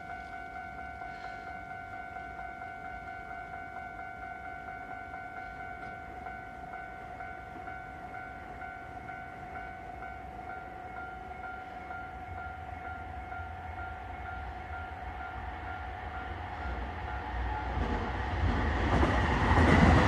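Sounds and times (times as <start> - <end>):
level-crossing warning bell: 0.0 - 20.0
train rumble: 0.0 - 20.0.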